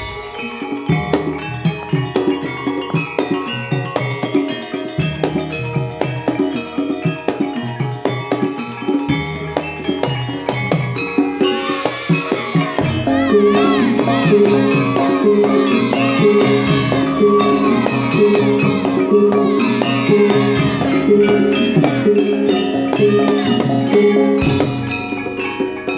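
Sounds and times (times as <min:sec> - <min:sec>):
gamelan ensemble playing: 0:00.0 - 0:25.9
wavering high melodic line: 0:00.0 - 0:25.9.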